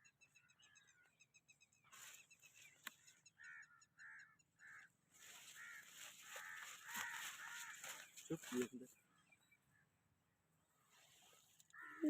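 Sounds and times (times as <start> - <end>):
harsh caw-like bird calls: 3.0 - 9.9, 11.7 - 12.0.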